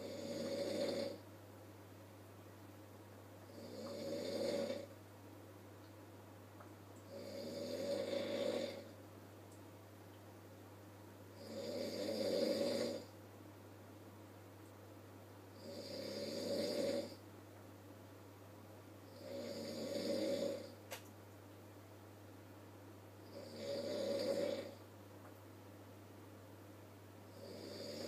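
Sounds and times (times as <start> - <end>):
person snoring loudly: 0.0 - 1.2, 3.5 - 4.9, 7.1 - 8.9, 11.4 - 13.1, 15.6 - 17.2, 19.1 - 20.7, 23.3 - 24.8, 27.3 - 28.0.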